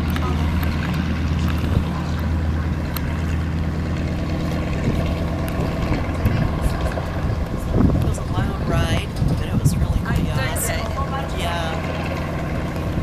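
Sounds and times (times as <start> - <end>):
piston aircraft engine drone: 0.0 - 13.0.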